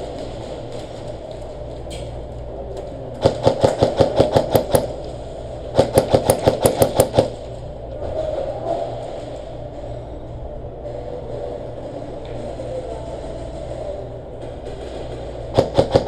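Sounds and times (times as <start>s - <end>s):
steady background hum: 0.0s - 16.0s
airsoft gun firing rapidly: 3.2s - 5.0s, 5.8s - 7.4s, 15.5s - 16.0s.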